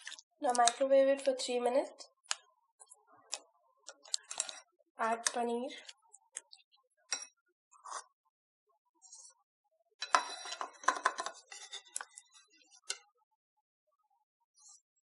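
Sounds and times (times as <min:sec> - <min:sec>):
food pieces clinking against bowl: 0:10.0 - 0:12.1.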